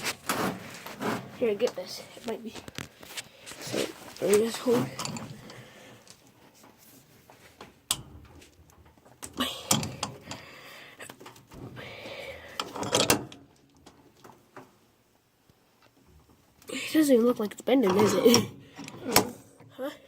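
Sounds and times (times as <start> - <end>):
bench vise clunking and scraping: 12.6 - 13.4.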